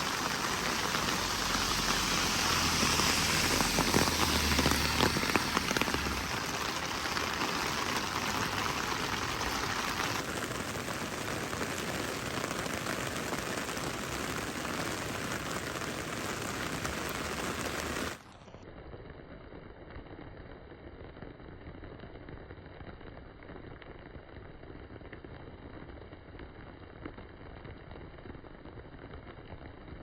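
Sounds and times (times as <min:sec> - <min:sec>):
steady rain falling: 0:00.0 - 0:18.6.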